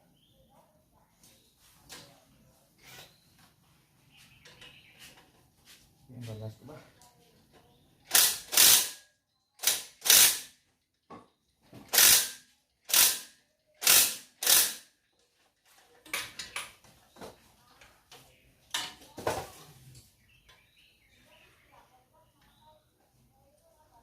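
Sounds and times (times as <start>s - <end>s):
ratchet wrench clicking: 8.1s - 9.0s, 9.6s - 10.5s, 11.9s - 14.9s.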